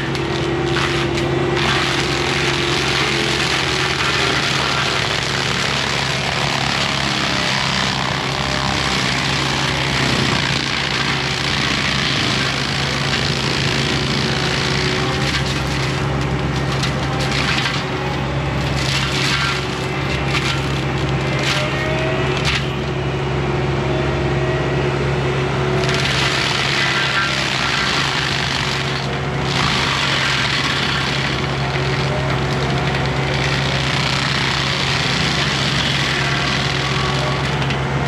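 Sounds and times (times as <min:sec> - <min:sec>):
wood cracking and splintering: 0:00.0 - 0:23.0, 0:25.8 - 0:38.0
diesel engine and hydraulics drone: 0:00.0 - 0:38.0
mulcher grinding brush and wood: 0:00.0 - 0:38.0.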